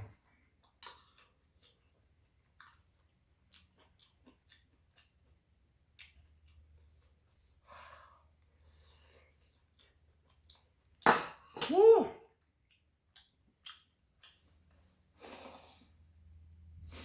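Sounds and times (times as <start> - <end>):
close-up chewing: 0.5 - 7.7.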